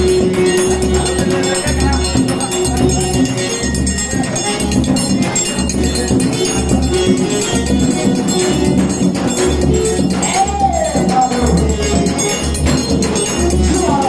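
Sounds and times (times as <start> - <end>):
bass beat: 0.0 - 14.0
jingling percussion: 0.0 - 14.0
loud dance music: 0.0 - 14.0
person singing: 0.0 - 14.0.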